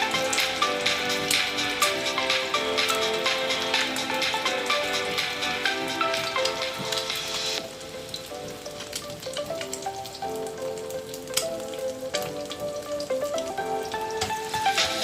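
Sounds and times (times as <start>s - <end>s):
background music: 0.0s - 15.0s
eggs sizzling in oil: 0.0s - 15.0s.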